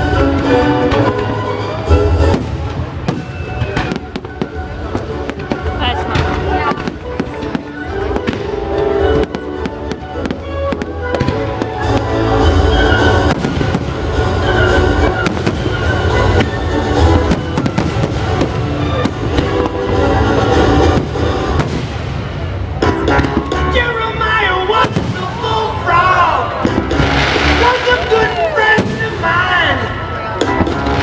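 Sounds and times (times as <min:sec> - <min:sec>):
fireworks bangs and crackles: 0:00.0 - 0:31.0
music playing: 0:00.0 - 0:31.0.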